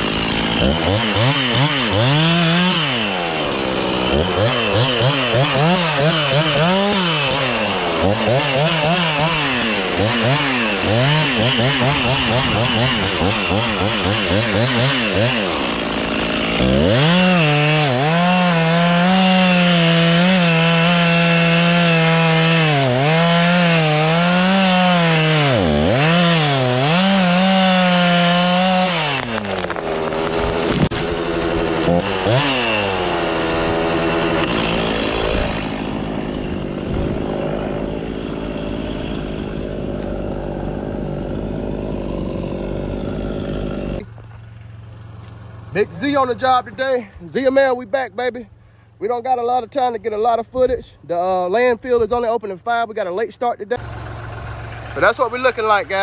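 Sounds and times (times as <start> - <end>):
chainsaw cutting wood: 0.0 - 48.4, 53.7 - 56.0.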